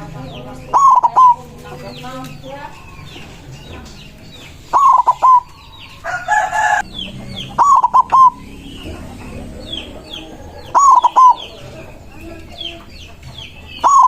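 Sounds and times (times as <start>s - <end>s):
dove cooing: 0.0s - 2.1s, 4.6s - 14.0s
small birds chirping: 0.0s - 14.0s
harsh bird call: 0.7s - 1.5s, 4.7s - 14.0s.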